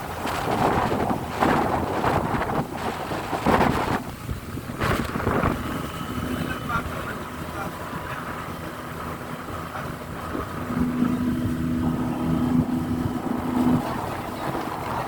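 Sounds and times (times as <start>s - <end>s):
low droning tone: 4.9s - 15.0s.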